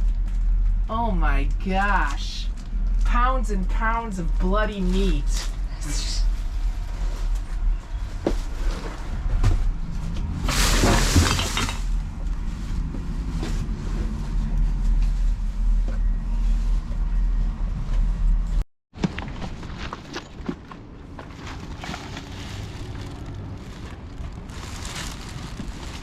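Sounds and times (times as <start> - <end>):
knocks and clatter in dumpster: 8.4 - 11.9
crash of rattling debris: 10.4 - 12.1.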